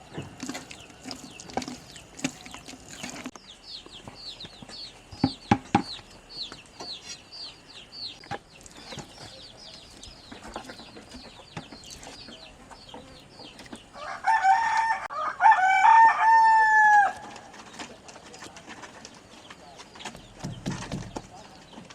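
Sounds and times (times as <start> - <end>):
small bird chirping: 0.0 - 14.2
sharp knocks: 5.1 - 6.0
rooster crowing: 14.0 - 17.5.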